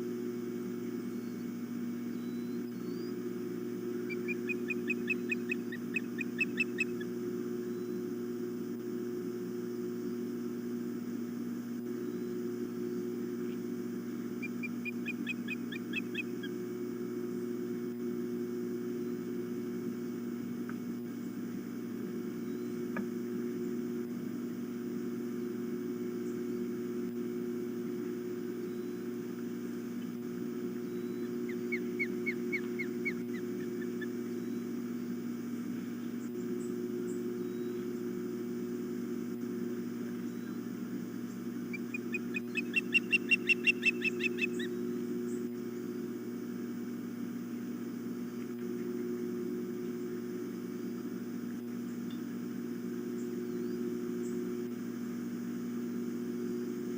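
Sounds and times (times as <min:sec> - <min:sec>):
steady low hum: 0:00.0 - 0:56.9
osprey chirping: 0:04.0 - 0:07.1, 0:14.4 - 0:16.6, 0:30.7 - 0:34.7, 0:41.2 - 0:44.7.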